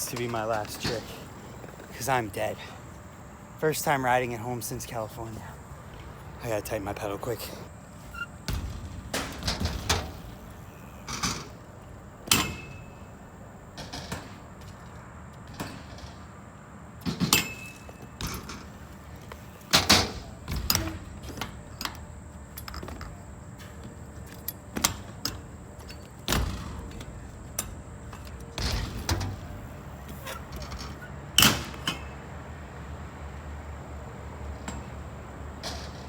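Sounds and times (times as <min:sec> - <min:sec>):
bike clanks and knocks: 0:00.0 - 0:03.6, 0:05.1 - 0:32.4, 0:34.4 - 0:36.0.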